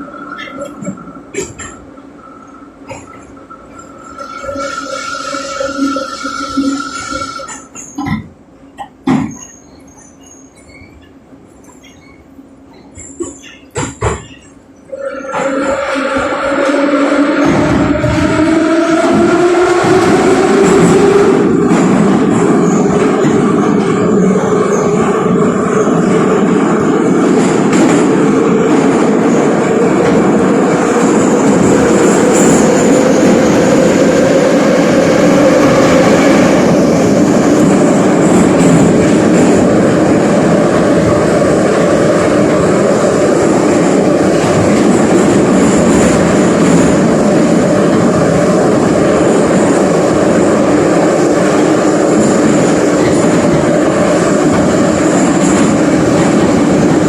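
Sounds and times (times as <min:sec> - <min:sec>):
train rolling on tracks: 0:00.0 - 0:57.0.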